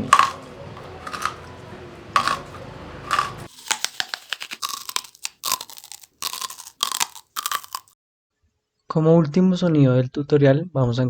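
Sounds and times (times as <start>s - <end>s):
carrot crunching: 3.1s - 7.9s
crackling snaps: 3.5s - 8.0s.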